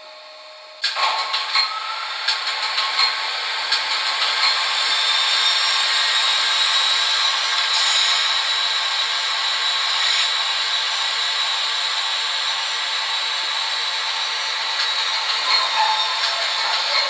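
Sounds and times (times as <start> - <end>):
model locomotive running noise: 0.0 - 17.0.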